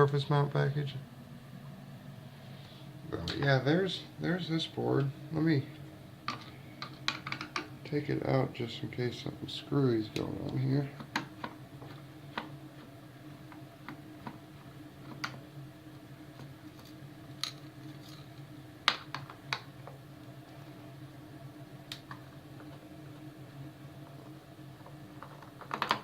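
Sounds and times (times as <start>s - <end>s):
low steady hum: 0.0s - 26.0s
clicks and taps of small parts: 6.3s - 7.7s.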